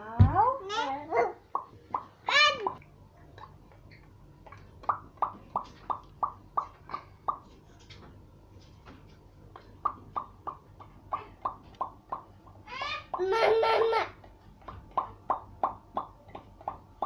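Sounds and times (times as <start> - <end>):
child making popping mouth noises: 3.4 - 7.5.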